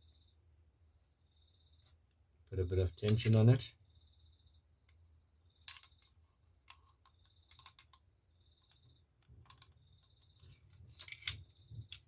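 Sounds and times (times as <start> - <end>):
small clicks of pistol parts: 5.7 - 8.0, 8.6 - 12.0.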